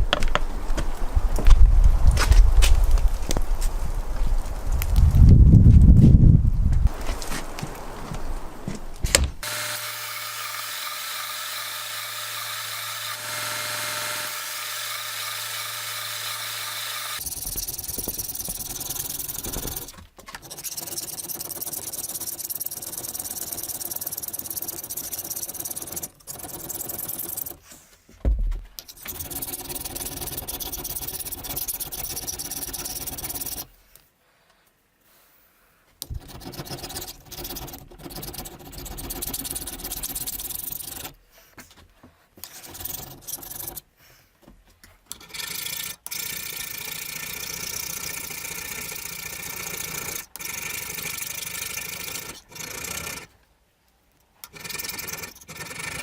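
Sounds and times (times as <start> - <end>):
power tool running on metal: 9.4 - 19.9.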